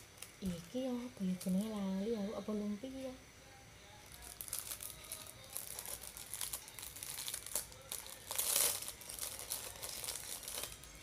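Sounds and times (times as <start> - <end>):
food wrapping crinkling: 4.0 - 11.0.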